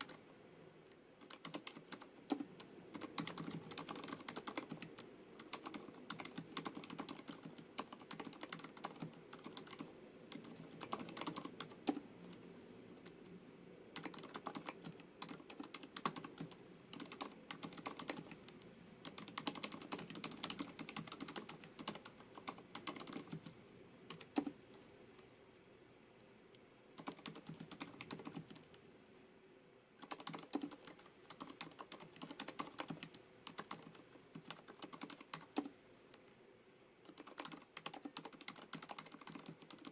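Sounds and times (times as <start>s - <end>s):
mechanical keyboard typing: 0.0s - 0.2s, 1.2s - 12.4s, 13.9s - 23.5s, 24.1s - 24.6s, 27.0s - 28.7s, 30.0s - 35.7s, 37.0s - 39.9s.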